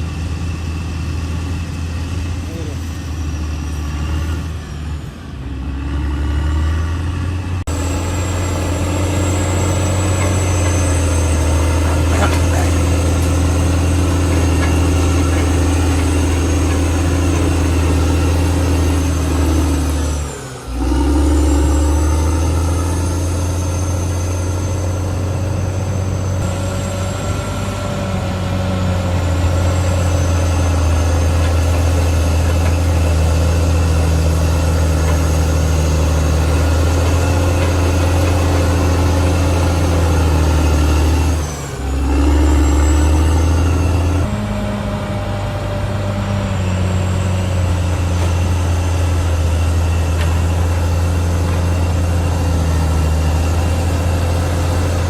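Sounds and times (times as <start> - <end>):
bulldozer diesel engine running: 0.0 - 55.0.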